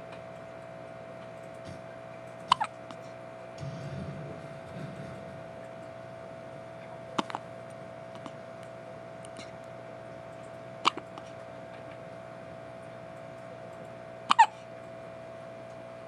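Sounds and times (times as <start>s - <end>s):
faint steady hum: 0.0s - 16.0s
baby hiccuping: 2.5s - 2.7s, 14.3s - 14.6s.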